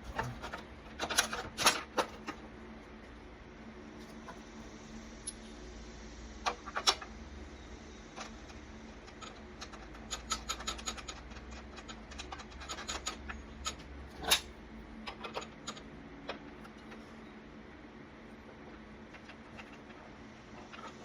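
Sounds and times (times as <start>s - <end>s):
saw parts clicking and scraping: 8.2s - 17.2s.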